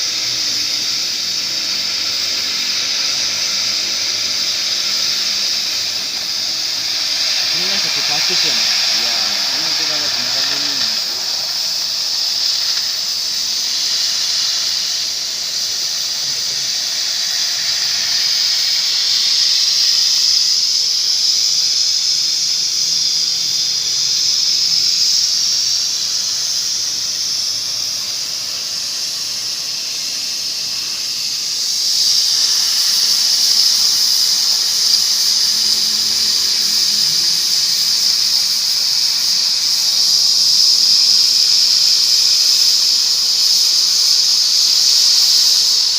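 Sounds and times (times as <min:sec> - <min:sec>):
gas torch flame hissing: 0:00.0 - 0:45.9.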